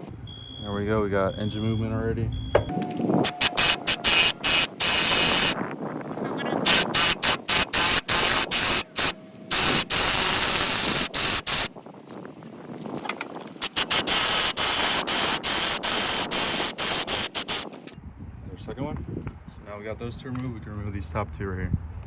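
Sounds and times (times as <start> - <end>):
power ratchet hissing bursts: 3.2 - 5.6, 6.6 - 11.7, 13.6 - 18.0.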